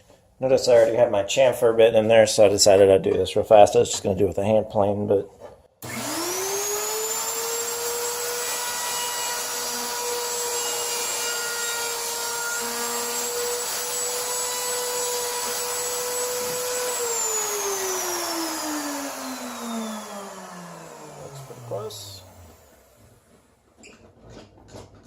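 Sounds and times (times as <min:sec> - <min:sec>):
router whining while cutting wood: 0:05.8 - 0:24.1.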